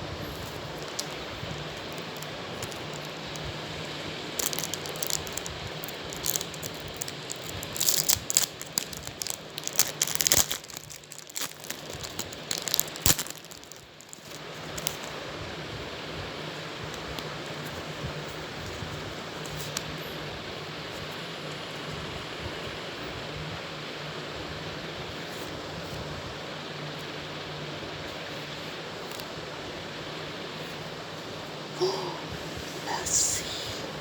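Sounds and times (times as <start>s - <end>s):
steady background hiss: 0.0s - 34.0s
wrapper crinkling and crackling: 0.3s - 15.2s.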